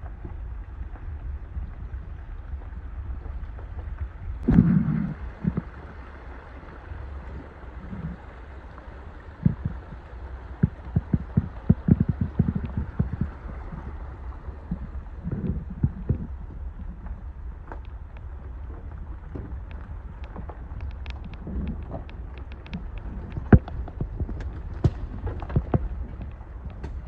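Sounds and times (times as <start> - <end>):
vehicle rumble: 0.0 - 27.0
knocks and rattles over bumps: 14.6 - 27.0.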